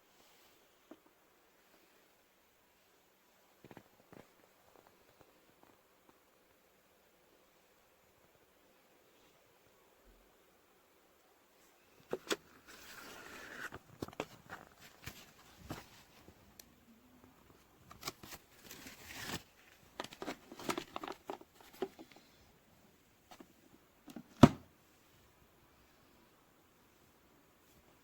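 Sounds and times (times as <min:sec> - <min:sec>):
rustling: 0:17.2 - 0:22.6.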